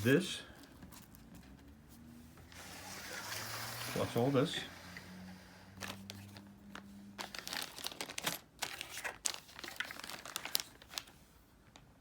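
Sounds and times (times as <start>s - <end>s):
crinkling and rustling: 0.5s - 2.6s, 5.8s - 12.0s.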